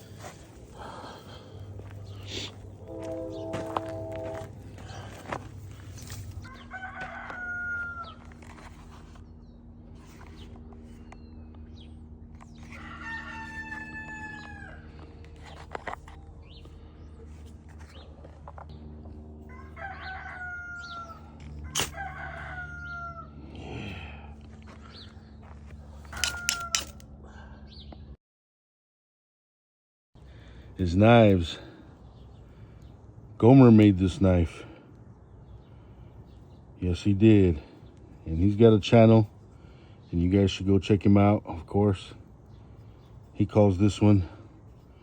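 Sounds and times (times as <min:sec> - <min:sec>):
faint low held tones: 0:00.0 - 0:06.5
rooster crowing: 0:06.4 - 0:08.5, 0:12.6 - 0:15.0, 0:19.5 - 0:23.4, 0:26.1 - 0:27.0.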